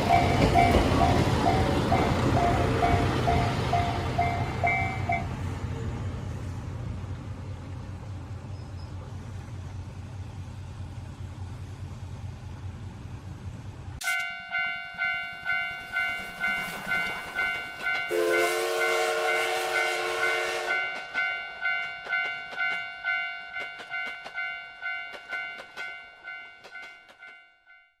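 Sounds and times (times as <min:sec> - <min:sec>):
level crossing warning bell: 0:00.0 - 0:05.3, 0:14.0 - 0:28.0
low engine rumble: 0:00.0 - 0:14.0
train horn: 0:18.1 - 0:21.0.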